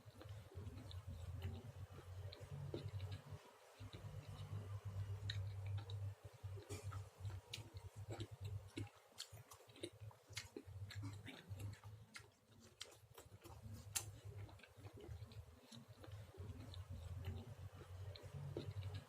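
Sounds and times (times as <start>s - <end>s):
person chewing: 0.0s - 19.0s
steady low hum: 0.0s - 19.0s.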